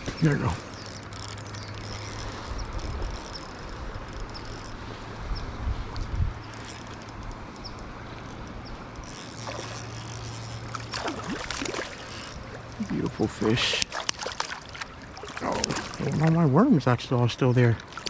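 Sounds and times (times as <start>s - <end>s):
river water rushing: 9.2s - 18.0s.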